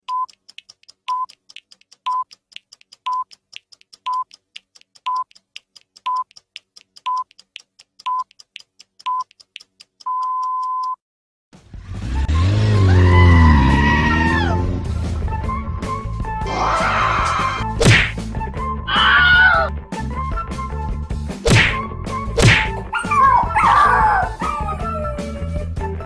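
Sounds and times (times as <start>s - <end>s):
short electronic beeps: 10.1s - 11.0s
loud pitch-bending sound: 22.4s - 25.6s.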